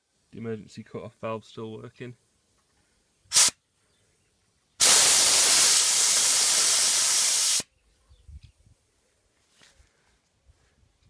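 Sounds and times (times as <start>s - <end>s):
compressed air hissing: 3.3s - 3.6s, 4.8s - 7.7s.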